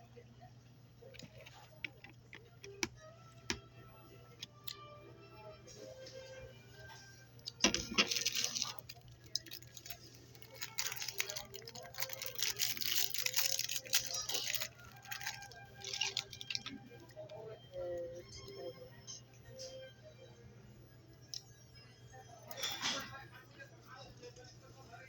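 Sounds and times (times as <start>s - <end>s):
faint music: 0.0s - 25.0s
rustling and clicking handling noise: 7.4s - 16.8s.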